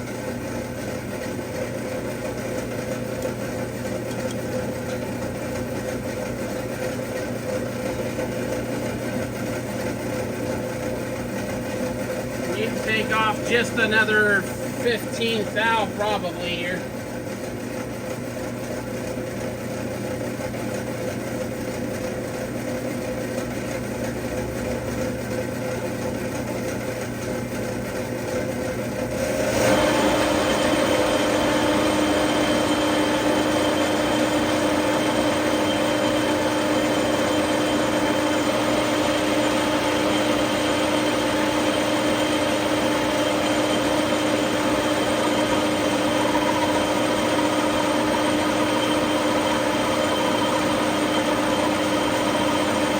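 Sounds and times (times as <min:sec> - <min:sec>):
metal lathe cutting: 0:00.0 - 0:17.6, 0:29.3 - 0:52.9.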